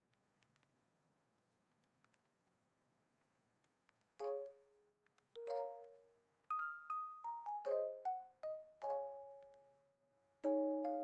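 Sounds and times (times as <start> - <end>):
light melody of struck notes: 5.4 - 9.6.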